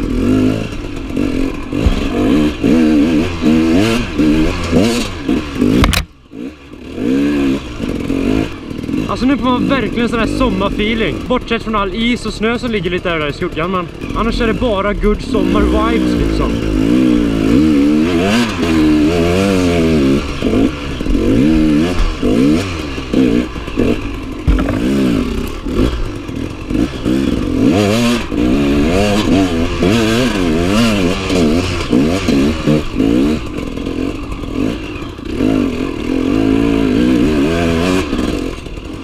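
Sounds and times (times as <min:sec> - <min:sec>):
motorcycle engine revving: 0:00.0 - 0:39.0
bike knocks and clatter: 0:01.1 - 0:02.5, 0:05.6 - 0:06.2, 0:23.6 - 0:26.2.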